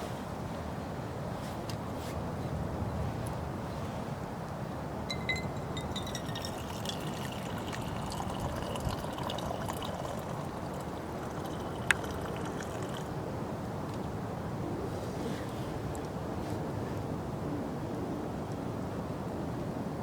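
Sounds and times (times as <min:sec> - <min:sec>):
water pouring: 0:05.1 - 0:13.1.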